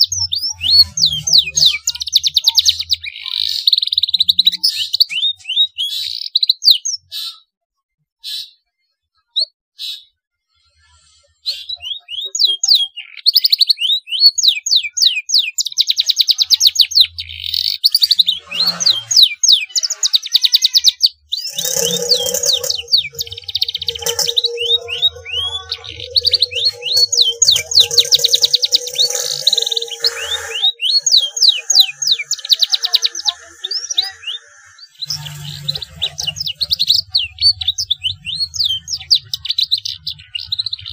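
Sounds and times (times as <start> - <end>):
canary singing: 0.0 - 7.2, 15.5 - 40.9
steady lower tone: 21.5 - 33.4.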